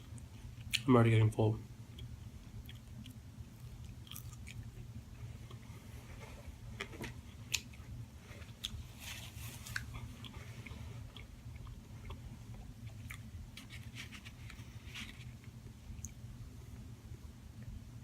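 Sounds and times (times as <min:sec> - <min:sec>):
steady low hum: 0:00.0 - 0:18.0
person chewing food: 0:01.9 - 0:16.2.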